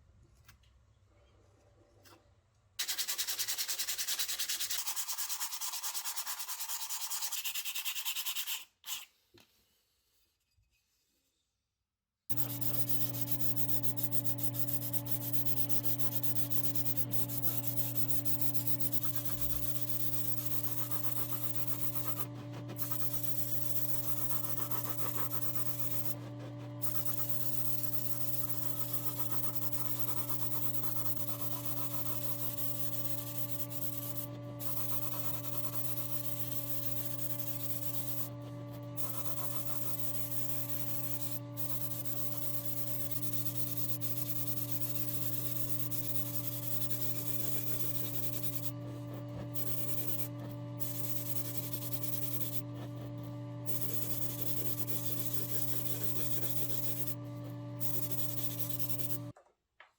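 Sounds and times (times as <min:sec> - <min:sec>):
abrasive sanding metal: 0:12.3 - 0:38.4, 0:39.0 - 0:57.2
power tool motor hum: 0:12.3 - 0:59.4.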